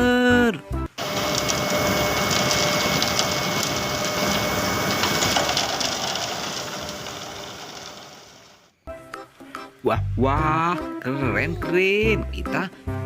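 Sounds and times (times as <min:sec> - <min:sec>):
dense crunching and crackling: 0:01.0 - 0:08.4.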